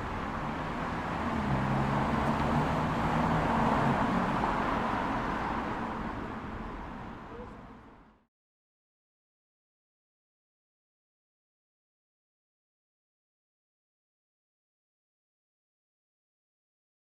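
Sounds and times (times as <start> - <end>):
vehicle passing: 0.0 - 6.5.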